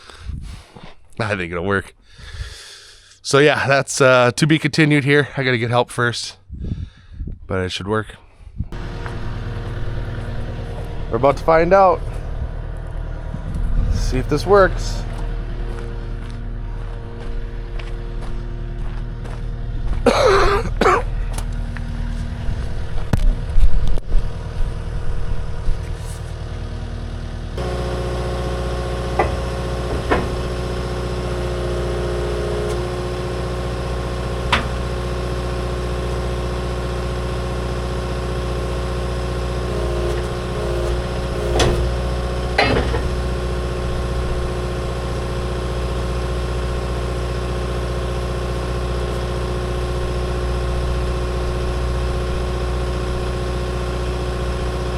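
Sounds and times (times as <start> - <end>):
skid steer engine idling: 8.8 - 54.9
metal clanks: 29.0 - 33.0, 39.7 - 45.0
loud knocks and clatter: 29.1 - 30.9, 39.8 - 43.6.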